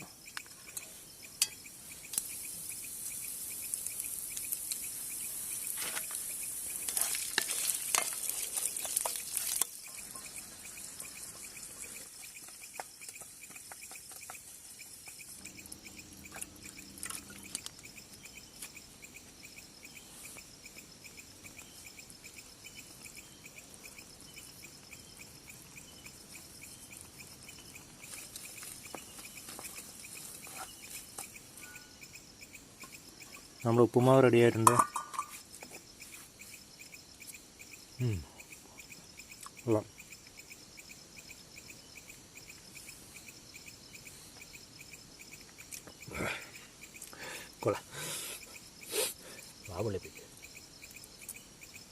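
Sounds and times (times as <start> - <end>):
crickets chirping: 0.0 - 51.9
seeds sizzling in hot oil: 0.3 - 19.3
stirring clicks: 6.8 - 10.4.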